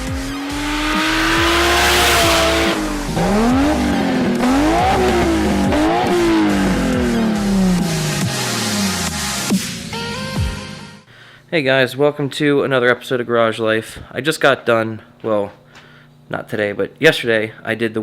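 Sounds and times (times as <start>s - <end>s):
car engine revving hard: 0.0s - 9.5s
electronic bass beat: 0.0s - 10.6s.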